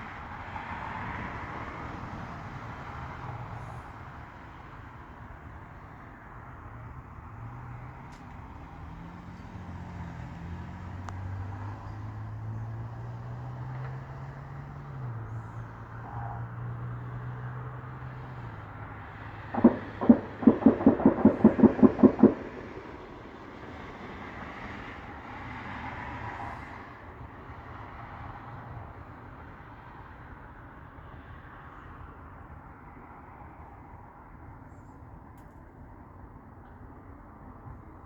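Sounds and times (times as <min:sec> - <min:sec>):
sharp distant bangs: 0:19.5 - 0:25.2.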